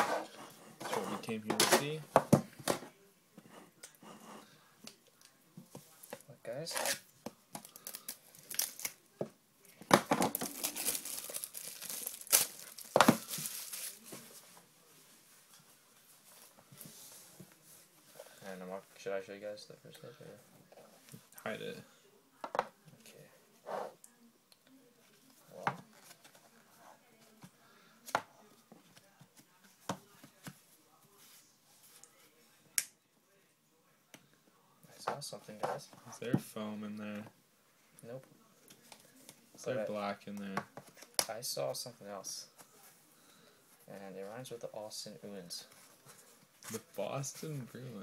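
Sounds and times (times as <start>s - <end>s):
faint packaging rustling: 5.2s - 19.1s, 24.8s - 32.5s
wrapper tearing and crinkling: 7.6s - 9.0s, 10.3s - 14.1s.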